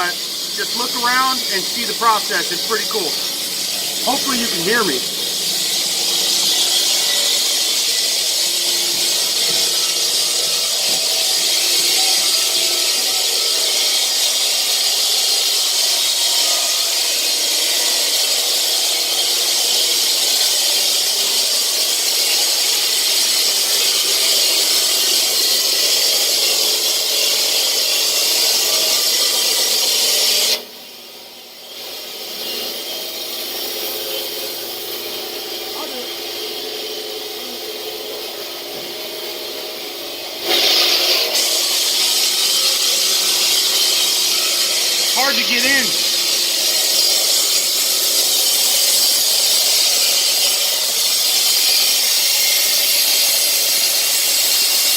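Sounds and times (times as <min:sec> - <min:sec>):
quieter machine noise: 0:00.0 - 0:07.7, 0:45.1 - 0:46.4
power tool breaking concrete: 0:00.0 - 0:54.9.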